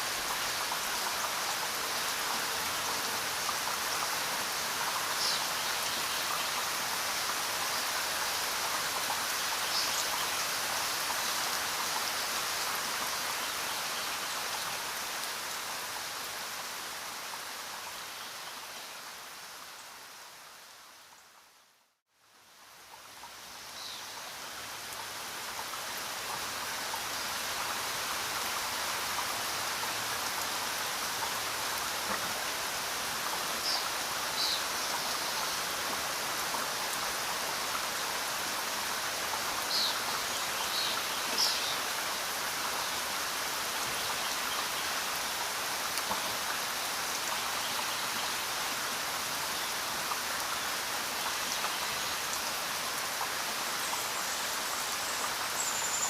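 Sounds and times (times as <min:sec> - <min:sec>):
steady rainfall hiss: 0:00.0 - 0:56.0.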